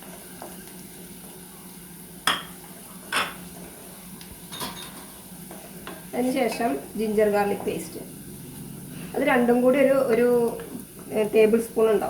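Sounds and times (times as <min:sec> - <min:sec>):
spoon clinking against frying pan: 0:04.5 - 0:05.0.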